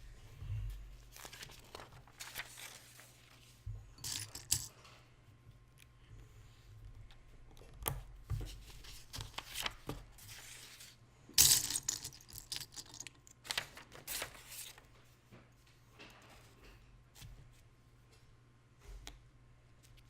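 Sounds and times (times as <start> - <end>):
plastic pieces clicking and rattling: 11.4 - 13.3.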